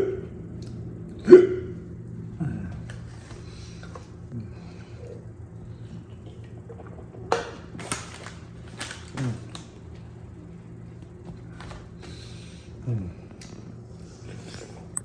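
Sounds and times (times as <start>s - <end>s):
man burping: 0.0s - 0.4s, 1.1s - 3.0s
steady low hum: 0.0s - 15.0s
man eating crunchy food: 5.8s - 10.8s.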